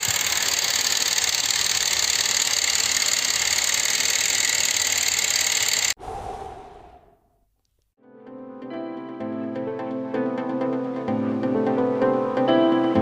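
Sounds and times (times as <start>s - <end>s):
small motor mechanism whirring: 0.0s - 6.0s.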